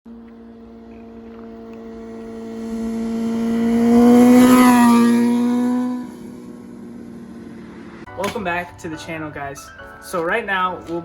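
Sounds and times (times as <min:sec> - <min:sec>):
motorcycle engine at high revs: 0:00.1 - 0:08.1.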